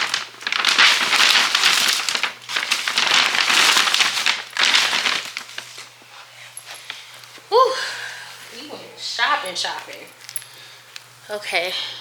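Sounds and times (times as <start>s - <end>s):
shopping bags rustling: 0.0s - 7.3s.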